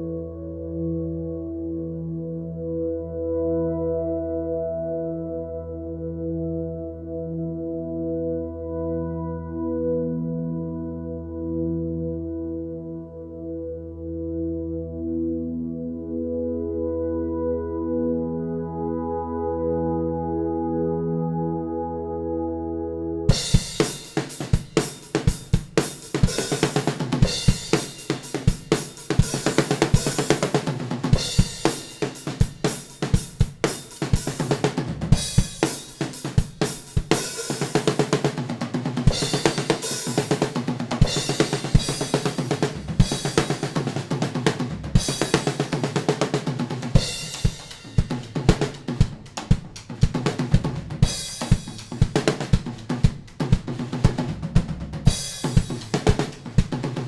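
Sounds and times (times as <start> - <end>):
drum kit playing fast rhythm: 23.3 - 57.0.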